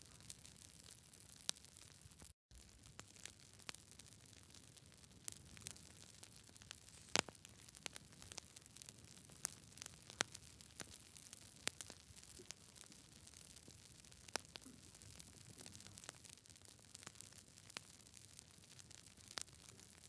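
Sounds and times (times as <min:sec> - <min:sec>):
campfire crackling: 0:00.0 - 0:20.0
faint steady hiss: 0:02.6 - 0:13.0.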